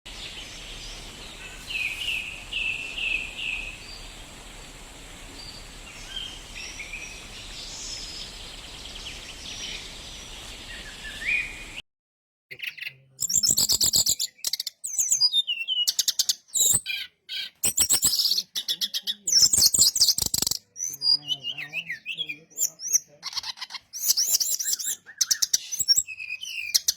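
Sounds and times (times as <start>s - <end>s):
bird chirping and twittering: 0.1s - 4.3s, 5.4s - 11.8s, 12.5s - 26.9s
steady hiss: 0.1s - 9.1s.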